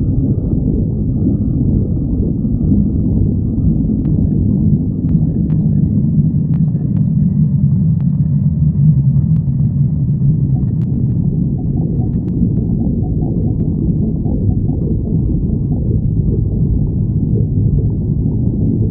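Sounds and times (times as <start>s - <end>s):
stomach growling: 0.0s - 18.9s
faint clicks: 10.4s - 13.7s.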